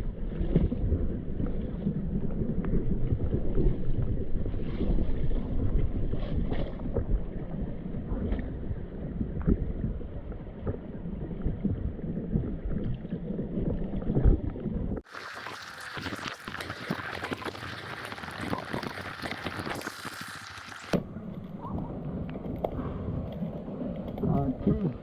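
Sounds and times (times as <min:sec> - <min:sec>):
muffled rushing river water: 0:00.0 - 0:25.0
hissy water sound: 0:15.0 - 0:25.0.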